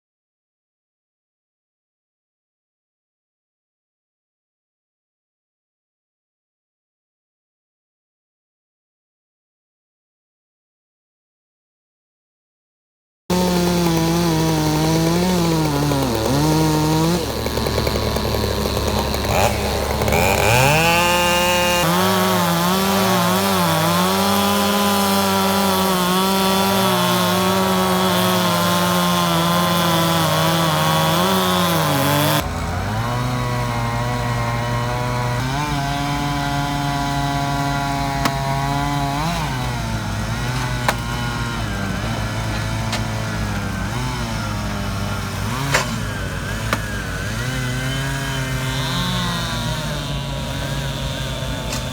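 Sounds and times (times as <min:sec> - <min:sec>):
chainsaw cutting wood: 0:13.3 - 0:51.9.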